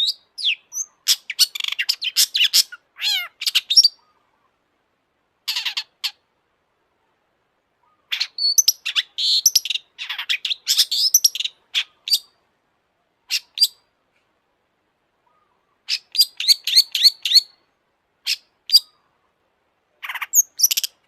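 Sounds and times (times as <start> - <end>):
bird singing rapid chirps: 0.0 - 4.2, 7.9 - 12.3, 15.9 - 17.6, 20.0 - 21.0.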